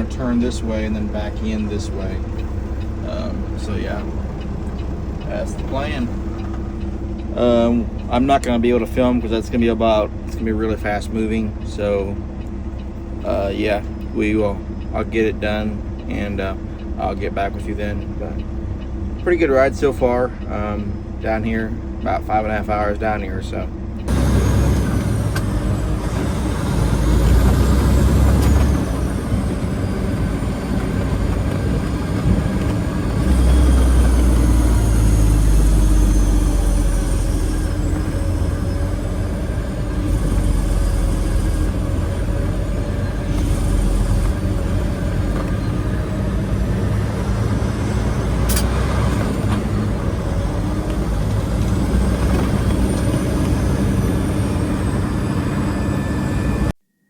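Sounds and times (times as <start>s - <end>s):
diesel truck engine running: 0.0s - 56.7s
sharp click: 48.5s - 48.8s.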